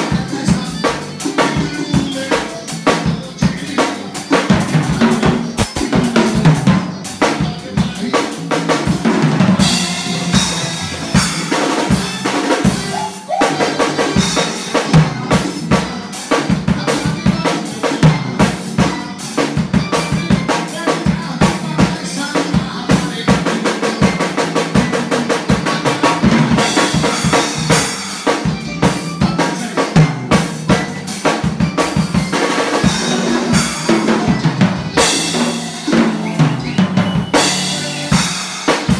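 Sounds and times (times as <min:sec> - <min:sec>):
bass drum and snare strokes: 0:04.4 - 0:07.4.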